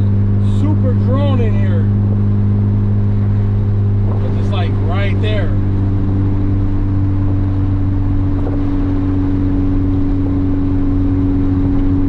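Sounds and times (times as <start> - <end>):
car engine droning: 0.0 - 12.0.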